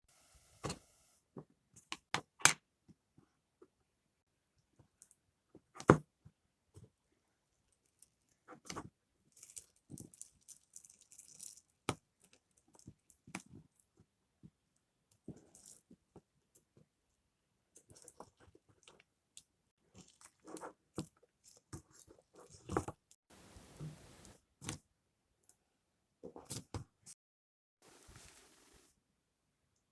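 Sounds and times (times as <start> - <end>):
steady rustle: 27.8 - 28.9.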